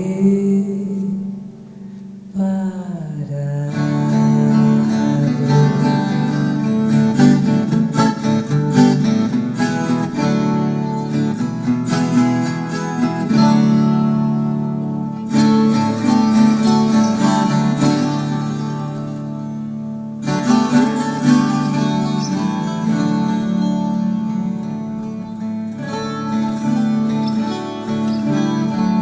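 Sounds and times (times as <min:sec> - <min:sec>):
woman singing: 0:00.0 - 0:01.5, 0:02.3 - 0:06.2
acoustic guitar: 0:00.0 - 0:29.0.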